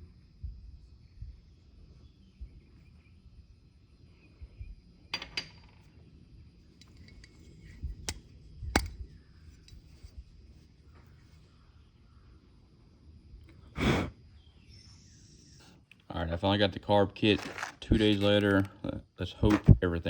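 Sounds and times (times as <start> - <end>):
metal parts and tools clinking: 17.2 - 18.8.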